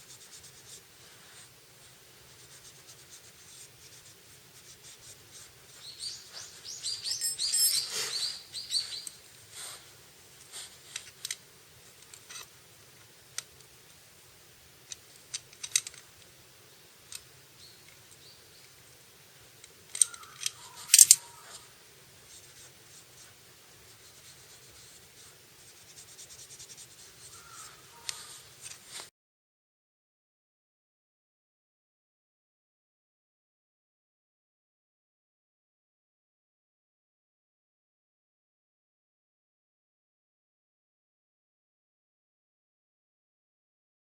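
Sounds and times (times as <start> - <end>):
sharp clicks and scraping: 14.9 - 16.1, 19.6 - 21.2.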